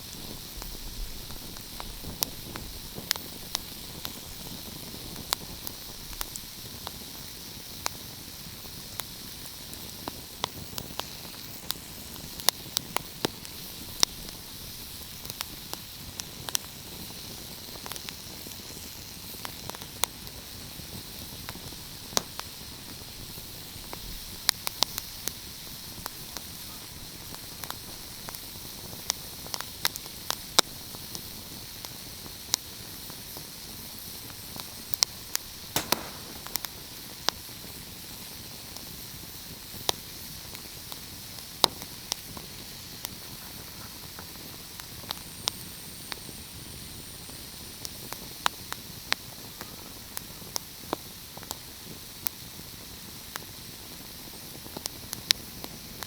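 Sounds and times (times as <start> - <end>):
wood fire crackling: 0.0 - 16.9, 31.6 - 37.8.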